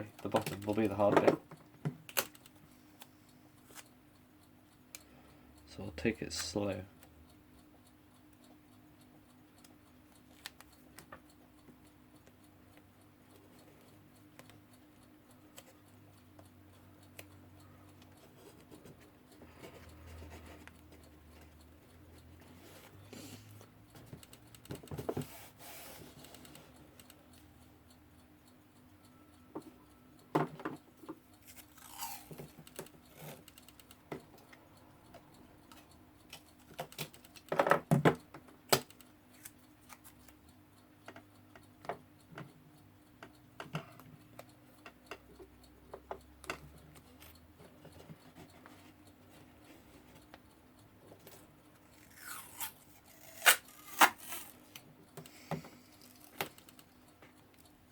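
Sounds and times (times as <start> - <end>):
adhesive tape ripping and crinkling: 52.3 - 54.6.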